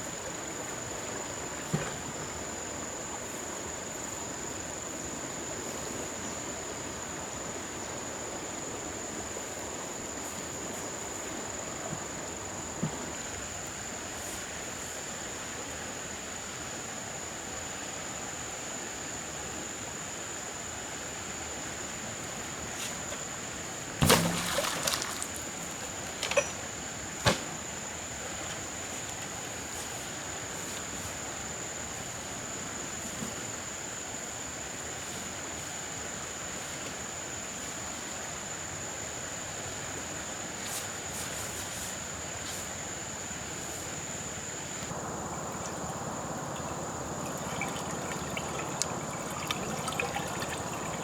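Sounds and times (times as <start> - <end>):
flowing water rushing: 24.0 - 26.4, 44.9 - 51.0.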